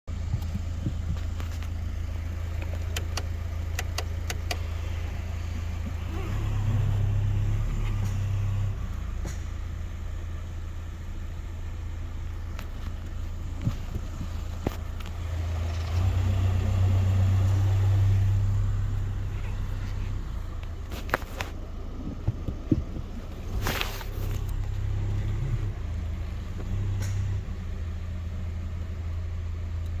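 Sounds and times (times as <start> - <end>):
car driving drone: 0.1 - 30.0
sharp clicks: 2.5 - 4.9.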